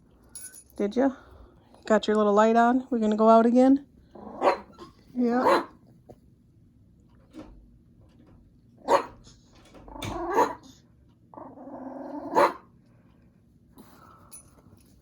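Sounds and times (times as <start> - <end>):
small dogs growling: 4.0 - 5.8, 9.9 - 12.7
small dogs barking: 4.1 - 5.8, 8.8 - 9.3, 10.0 - 10.8, 11.9 - 12.7.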